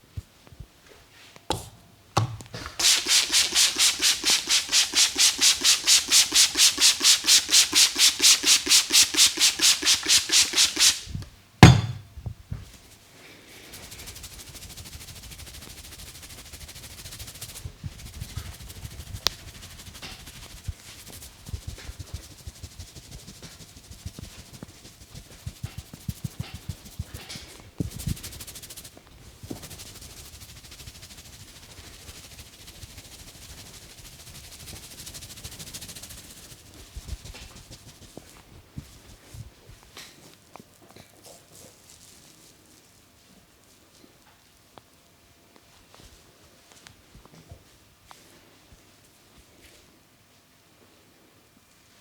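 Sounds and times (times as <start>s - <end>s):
fingers rubbing hair and scalp: 2.7s - 11.2s, 13.7s - 27.2s, 27.8s - 38.4s.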